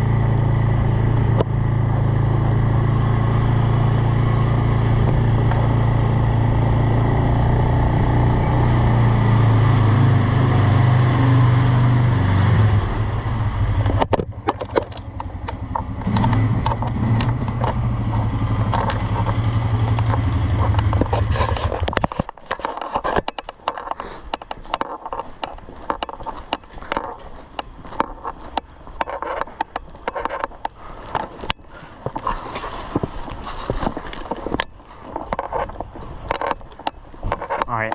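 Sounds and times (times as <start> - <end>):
vehicle engine running: 0.0 - 37.9
clicks: 13.8 - 37.9
rustling: 17.5 - 37.9.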